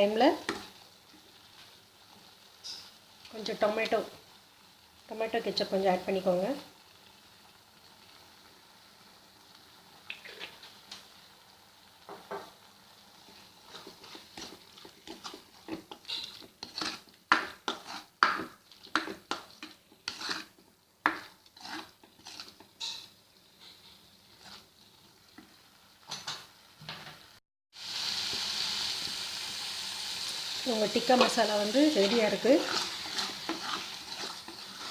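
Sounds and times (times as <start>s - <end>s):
faint sizzle: 0.0s - 34.9s
spoon scraping and knocking pan: 0.4s - 1.2s, 12.1s - 12.6s, 13.2s - 24.7s, 30.7s - 34.9s.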